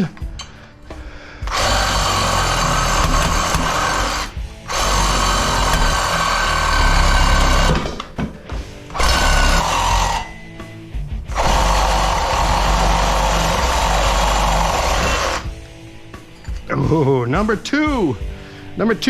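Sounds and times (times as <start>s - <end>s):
reciprocating saw cutting pipe: 1.5s - 7.9s, 8.9s - 10.4s, 11.3s - 15.5s.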